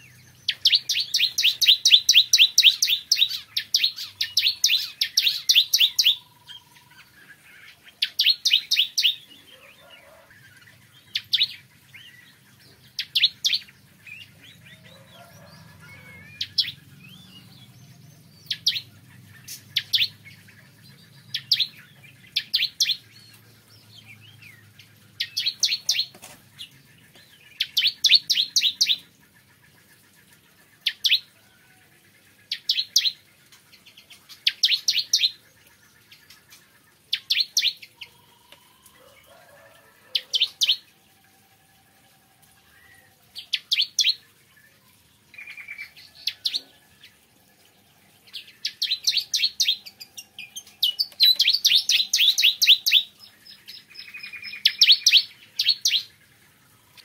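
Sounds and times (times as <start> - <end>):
bird chirping rapidly: 0.0 - 9.8, 10.8 - 30.0, 48.3 - 56.2.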